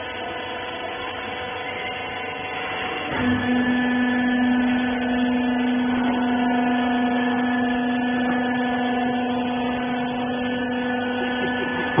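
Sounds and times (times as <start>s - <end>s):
baler power unit humming: 0.0s - 12.0s.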